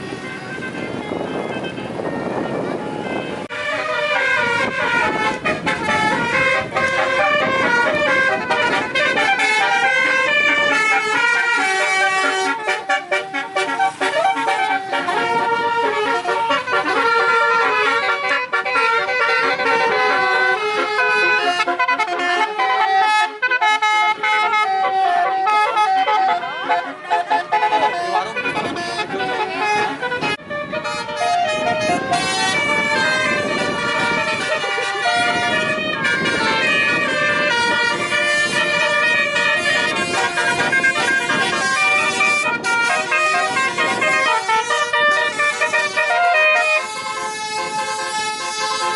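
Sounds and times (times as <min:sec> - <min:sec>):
crowd and engine hubbub: 0:00.0 - 0:48.9
multi-tone vehicle horn tune: 0:00.0 - 0:48.9.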